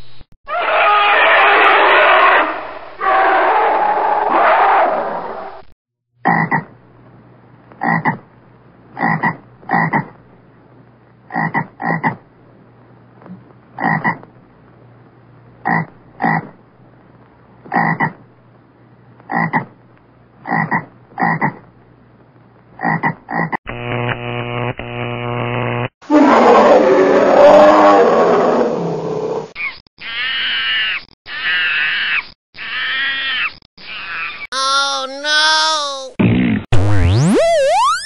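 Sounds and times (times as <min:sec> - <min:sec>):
frog croaking: 0:06.2 - 0:06.7, 0:07.8 - 0:08.2, 0:09.0 - 0:10.1, 0:11.3 - 0:12.2, 0:13.8 - 0:14.3, 0:15.6 - 0:16.6, 0:17.7 - 0:18.2, 0:19.3 - 0:19.7, 0:20.4 - 0:21.6, 0:22.8 - 0:23.6.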